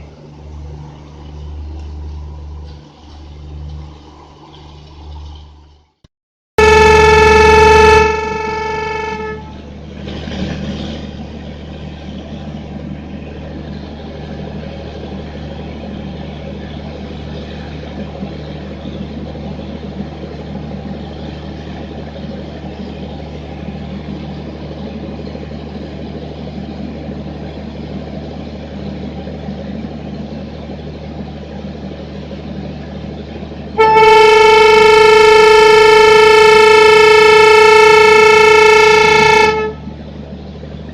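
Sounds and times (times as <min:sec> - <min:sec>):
train rumbling: 0:00.0 - 0:05.9, 0:06.6 - 0:40.9
locomotive horn: 0:06.6 - 0:09.7, 0:33.8 - 0:40.0
low hum: 0:06.6 - 0:40.9.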